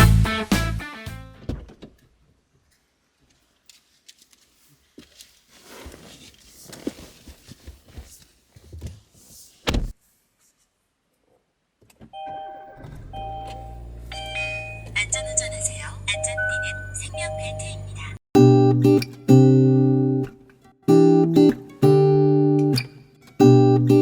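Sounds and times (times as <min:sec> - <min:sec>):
music: 0:00.0 - 0:01.4, 0:16.2 - 0:20.3, 0:20.9 - 0:24.0
heavy thump: 0:09.7 - 0:10.0.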